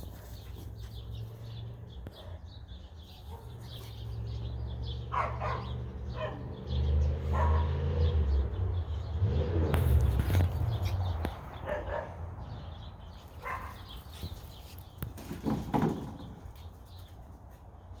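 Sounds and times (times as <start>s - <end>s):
dog barking: 3.2s - 3.6s, 5.1s - 6.5s, 7.3s - 7.8s, 11.6s - 12.2s, 13.4s - 13.8s.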